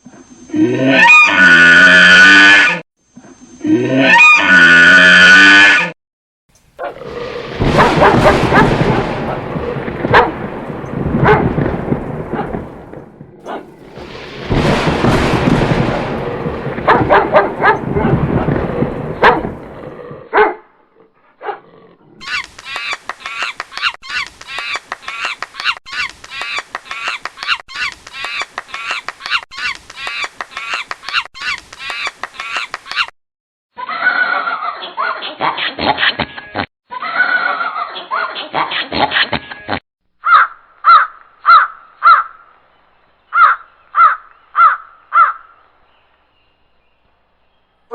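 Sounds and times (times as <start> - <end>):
dog barking: 6.8 - 8.8, 10.1 - 10.5, 11.2 - 11.6, 12.3 - 12.6, 13.4 - 13.7, 16.8 - 18.1, 19.2 - 19.6, 20.3 - 20.7, 21.4 - 21.7.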